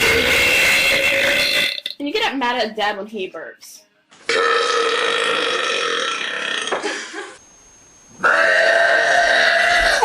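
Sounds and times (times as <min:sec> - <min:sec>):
girl burping: 0:04.3 - 0:06.8, 0:08.2 - 0:10.0.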